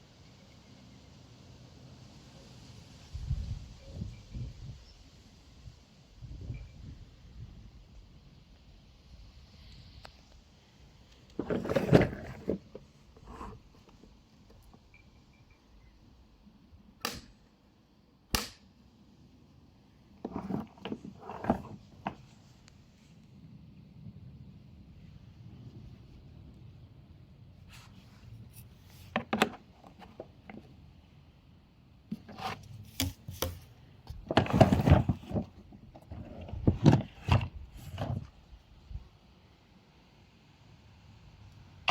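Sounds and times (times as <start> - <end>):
rustling clatter: 11.3 - 14.1, 20.2 - 22.5, 32.2 - 38.3
plastic parts knocking and clattering: 33.4 - 38.2.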